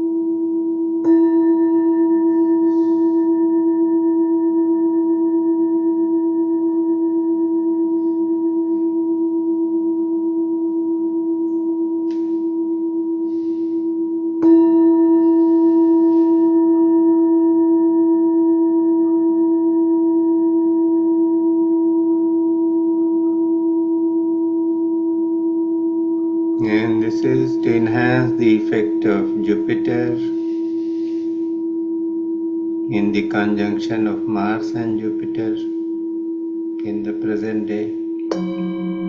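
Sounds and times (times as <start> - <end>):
singing bowl ringing: 0.0 - 39.0.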